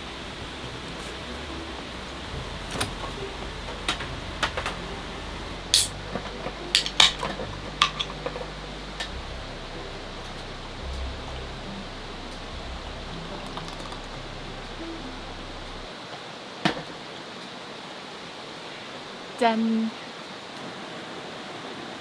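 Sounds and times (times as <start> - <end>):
steady low hiss: 0.0 - 22.0
dishes and utensils clinking: 5.8 - 9.2.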